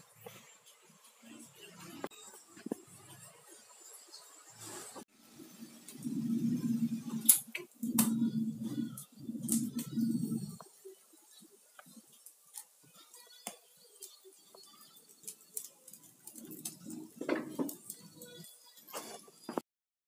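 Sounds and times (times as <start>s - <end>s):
dishes clattering: 16.6s - 17.9s.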